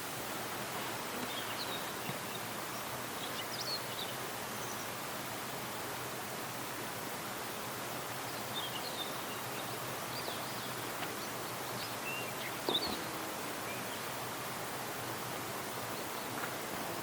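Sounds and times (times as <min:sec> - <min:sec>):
outdoor background hiss: 0:00.0 - 0:17.0
small birds chirping: 0:00.7 - 0:05.1, 0:08.1 - 0:17.0.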